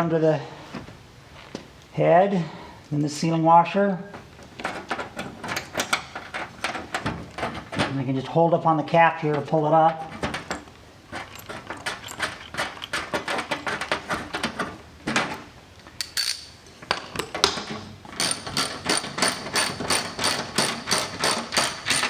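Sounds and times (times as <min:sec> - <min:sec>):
metal hardware clicks and knocks: 0:04.5 - 0:07.9, 0:10.0 - 0:22.0
hand ratchet clicking: 0:16.0 - 0:16.5, 0:18.2 - 0:22.0.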